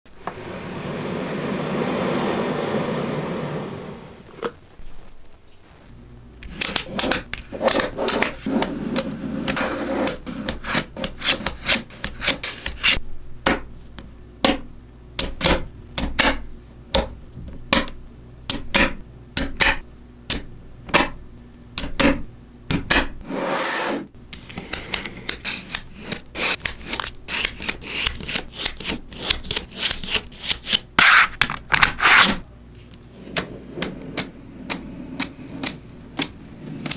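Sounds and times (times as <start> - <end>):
rushing noise: 0.4 - 4.2.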